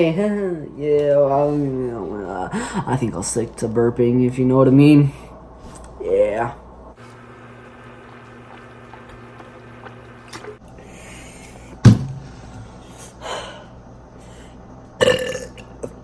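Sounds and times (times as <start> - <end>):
person burping: 15.0 - 16.0.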